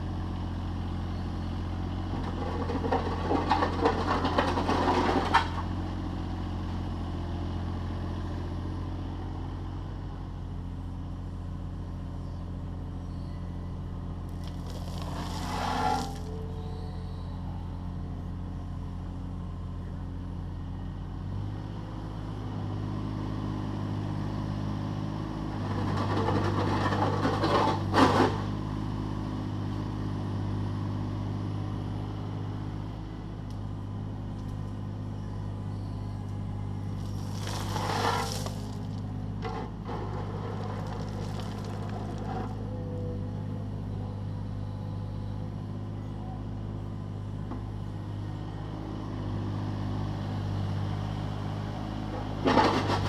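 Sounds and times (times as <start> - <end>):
excavator diesel engine running: 0.0 - 53.0
bucket scraping through stone: 14.4 - 16.4, 37.0 - 42.6.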